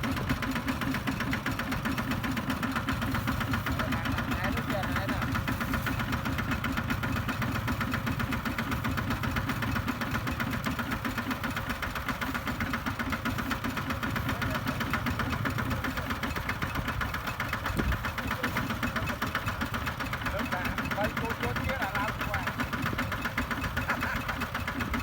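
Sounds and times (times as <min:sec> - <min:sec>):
tractor diesel engine chugging: 0:00.0 - 0:25.0.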